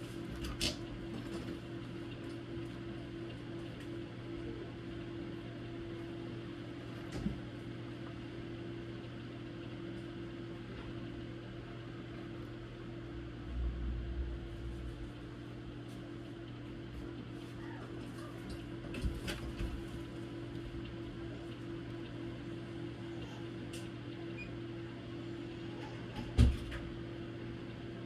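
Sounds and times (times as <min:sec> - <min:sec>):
electrical hum: 0:00.0 - 0:28.0
low bumps: 0:13.3 - 0:15.2.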